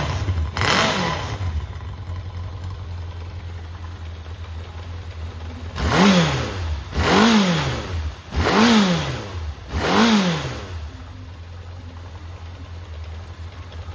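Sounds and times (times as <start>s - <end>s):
motorcycle engine idling and revving: 0.0s - 13.9s.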